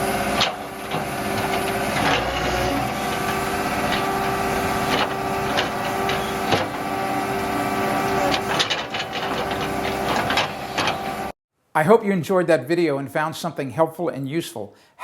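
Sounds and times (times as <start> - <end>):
excavator diesel engine running: 0.0 - 11.3.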